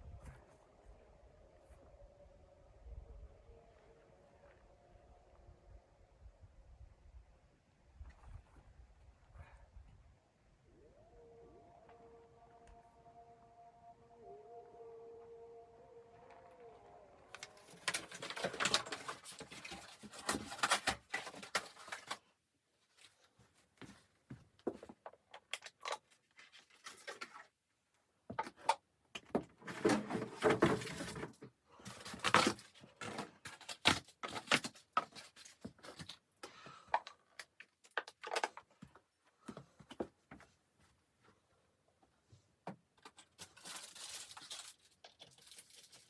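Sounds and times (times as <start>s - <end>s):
clicks knocks and rustles of handling: 17.4s - 22.2s.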